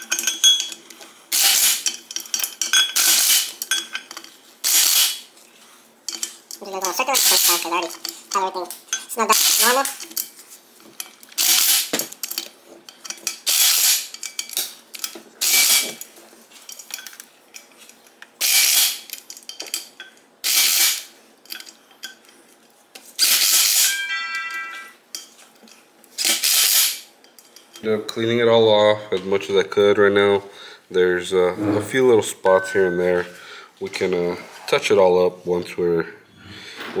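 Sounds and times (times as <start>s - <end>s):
ratchet wrench clicking: 4.6s - 5.2s, 11.4s - 11.9s, 13.5s - 14.1s, 18.4s - 19.0s, 20.4s - 21.1s, 26.2s - 27.0s.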